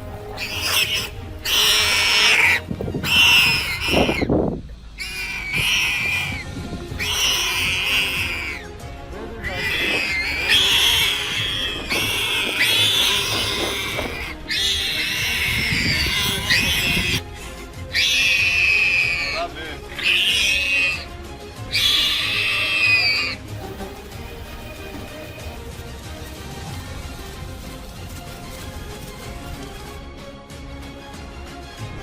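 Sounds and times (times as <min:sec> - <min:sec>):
wild boar squealing: 0:00.0 - 0:04.3, 0:05.0 - 0:08.8, 0:09.4 - 0:25.6.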